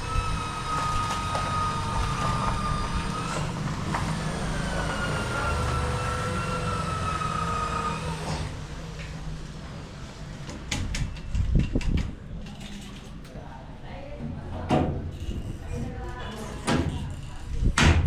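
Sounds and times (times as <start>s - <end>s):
electric power tool motor whine: 0.0s - 8.6s.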